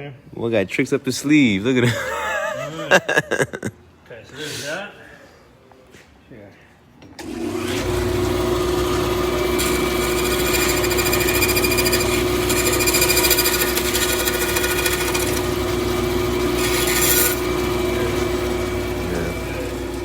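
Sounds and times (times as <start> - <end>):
bandsaw cutting wood: 7.2 - 20.0
bandsaw humming: 7.5 - 20.0.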